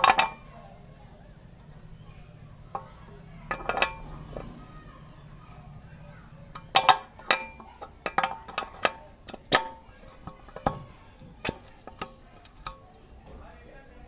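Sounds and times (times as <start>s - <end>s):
metal tools clinking: 0.0s - 0.6s, 2.6s - 4.7s, 5.9s - 13.3s.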